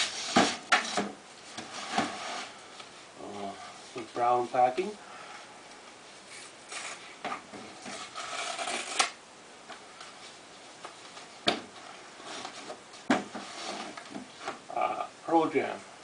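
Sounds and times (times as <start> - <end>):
paper packaging rustling and tearing: 6.3 - 7.2, 7.8 - 9.2.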